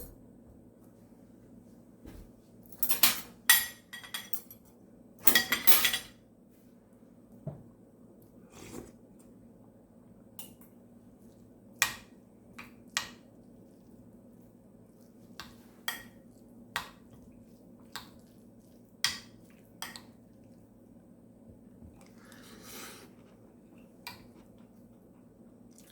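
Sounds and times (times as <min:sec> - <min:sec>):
cutlery clinking against a dish: 0:02.8 - 0:06.2.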